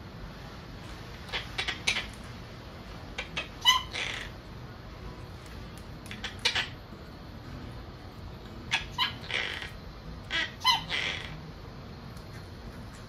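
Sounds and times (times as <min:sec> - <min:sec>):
parrot squawking: 0:01.2 - 0:02.4, 0:03.1 - 0:04.5, 0:06.0 - 0:06.9, 0:08.6 - 0:11.5.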